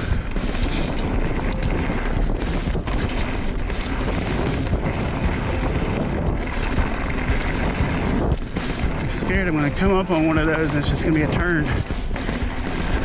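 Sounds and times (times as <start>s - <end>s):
bike rattling over bumps: 0.0s - 13.0s
wind rumble on microphone: 0.0s - 13.0s.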